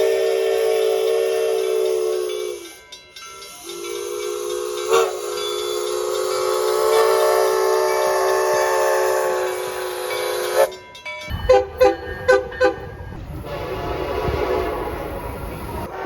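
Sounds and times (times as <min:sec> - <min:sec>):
locomotive air horn chord: 0:00.0 - 0:02.8, 0:03.7 - 0:10.8, 0:11.4 - 0:16.0
hissing air: 0:00.0 - 0:02.9.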